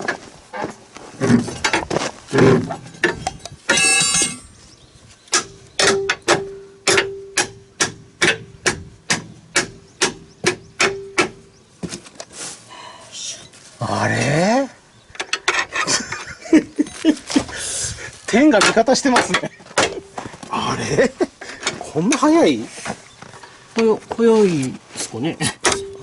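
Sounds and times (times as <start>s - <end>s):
hammer striking steel: 3.7s - 4.5s, 5.3s - 10.2s.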